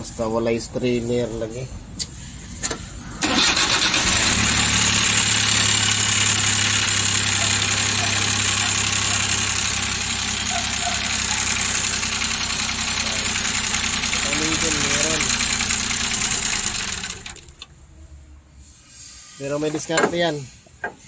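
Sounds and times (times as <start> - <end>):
engine idling: 3.2 - 17.8.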